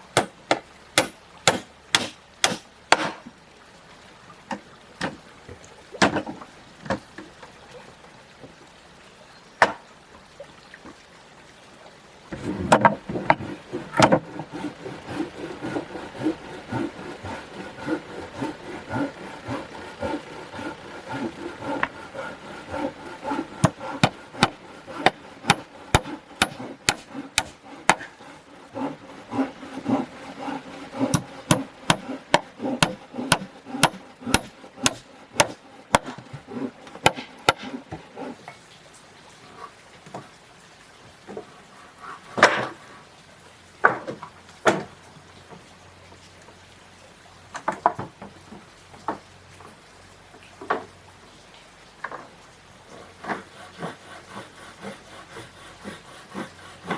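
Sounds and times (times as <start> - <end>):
steady rough sound: 12.4 - 38.4
tool striking wood: 12.4 - 38.4.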